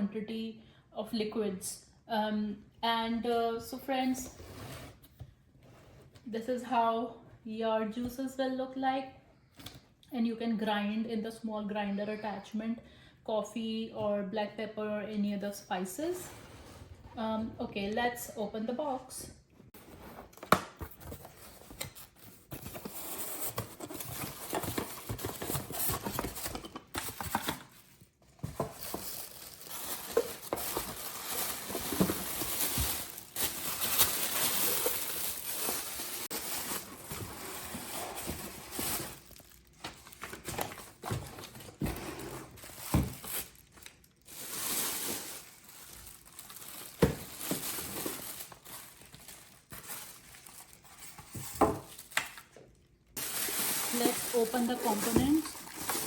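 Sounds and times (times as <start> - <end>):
crinkling plastic and paper: 20.3 - 56.0
packaging tearing: 28.6 - 41.0, 53.2 - 56.0.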